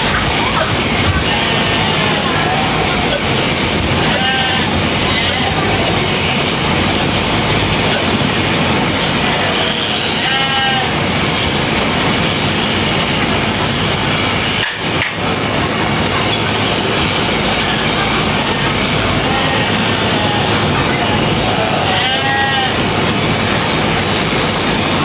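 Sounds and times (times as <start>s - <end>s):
loud dense shearing noise: 0.0s - 25.0s
sheep bleat: 1.0s - 8.3s, 9.0s - 11.2s, 17.4s - 23.2s.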